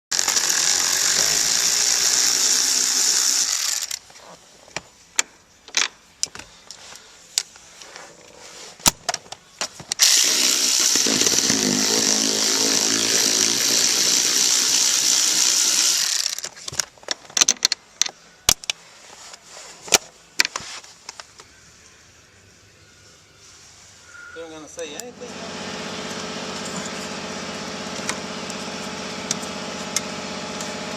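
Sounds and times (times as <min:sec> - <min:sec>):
small electric motor running: 0:00.2 - 0:04.0, 0:10.0 - 0:16.4, 0:25.1 - 0:30.9.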